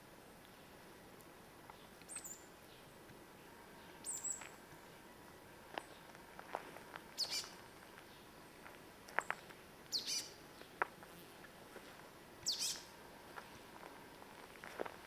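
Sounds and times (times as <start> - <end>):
bird chirping: 1.8 - 2.9, 3.8 - 5.1, 7.2 - 8.3, 9.2 - 10.4, 12.4 - 12.9.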